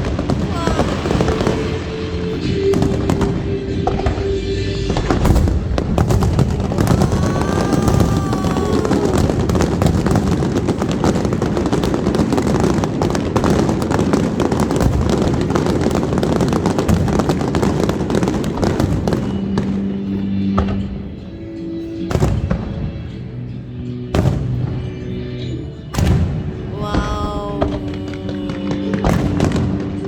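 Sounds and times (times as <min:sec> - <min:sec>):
fireworks crackling and popping: 0:00.0 - 0:04.0, 0:04.9 - 0:20.8, 0:26.0 - 0:30.0
background music: 0:00.0 - 0:30.0.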